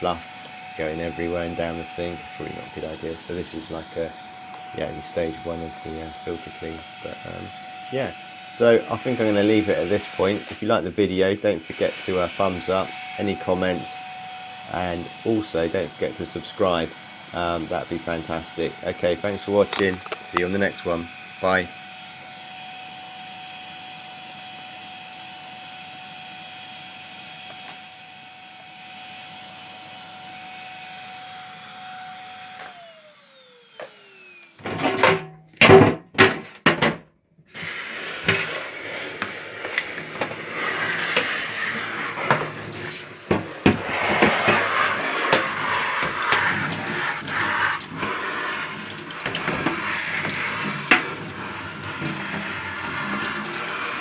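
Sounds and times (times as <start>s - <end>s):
vacuum cleaner whining: 0.0s - 35.3s, 37.5s - 54.0s
tap running into sink: 45.3s - 54.0s.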